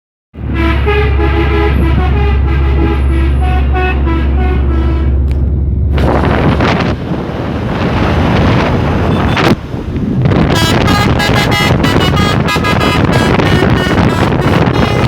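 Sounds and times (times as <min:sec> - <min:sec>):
wind and road noise: 0:00.3 - 0:15.0
air horn playing tune: 0:00.4 - 0:05.3, 0:10.5 - 0:15.0
low engine drone: 0:00.4 - 0:15.0.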